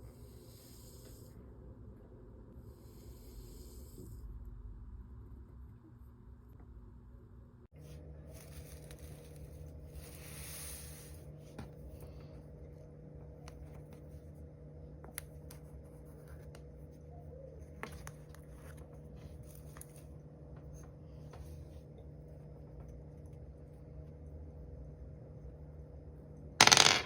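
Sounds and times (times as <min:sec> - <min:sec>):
steady low hum: 0:00.0 - 0:26.6.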